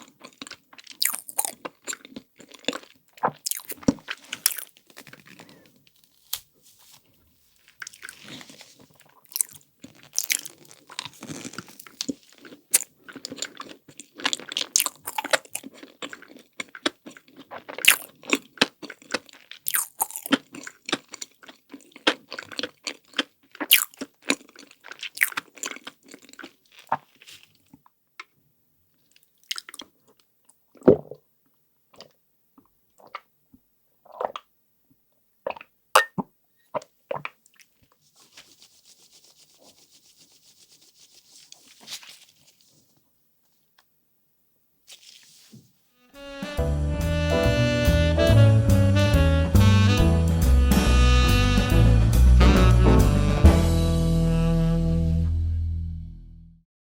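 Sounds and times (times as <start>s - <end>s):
crunching and chewing: 0.0s - 33.3s, 35.5s - 38.6s.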